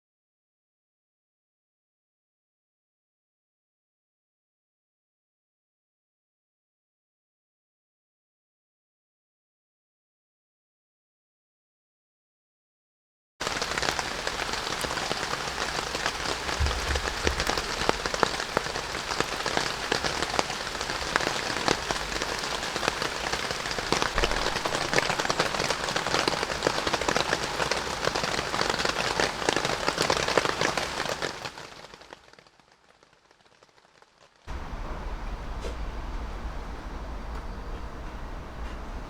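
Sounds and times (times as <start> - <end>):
rain falling: 13.4 - 39.0.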